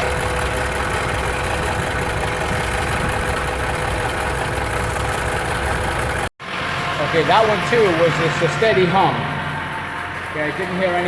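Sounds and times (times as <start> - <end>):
ac compressor hum: 6.4 - 11.0.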